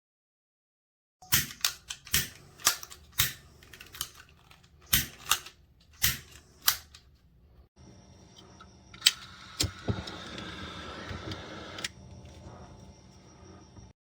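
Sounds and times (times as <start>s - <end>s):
sharp mechanical clicks: 1.2s - 4.3s
low hum: 6.2s - 14.0s.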